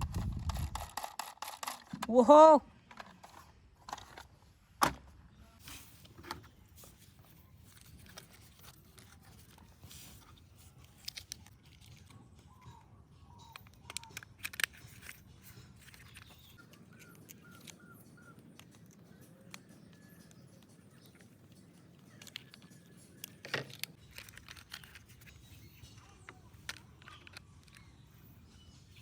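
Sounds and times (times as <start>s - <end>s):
plastic toy pieces clicking: 0.1s - 2.2s, 10.8s - 28.2s.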